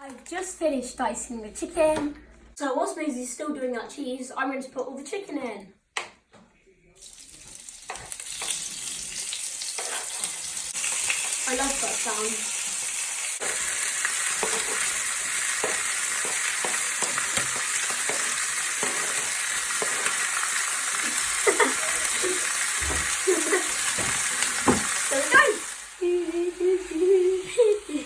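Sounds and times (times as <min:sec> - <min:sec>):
chicken sizzling in a frying pan: 0:07.0 - 0:28.0.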